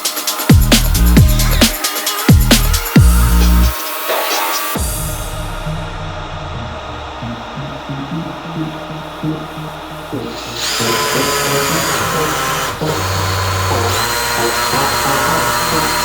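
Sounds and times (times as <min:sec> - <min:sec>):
electric drill cutting metal: 0:00.0 - 0:04.8, 0:10.3 - 0:16.0
electronic music: 0:00.0 - 0:16.0.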